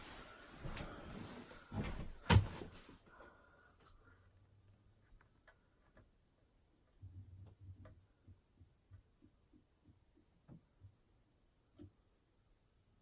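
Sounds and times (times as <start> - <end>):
faint light clicks and taps: 11.7 - 12.0.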